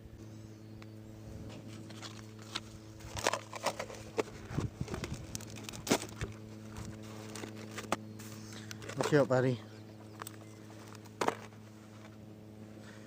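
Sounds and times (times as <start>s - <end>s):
steady low hum: 0.0s - 13.0s
plastic bottle crackling: 1.9s - 8.0s.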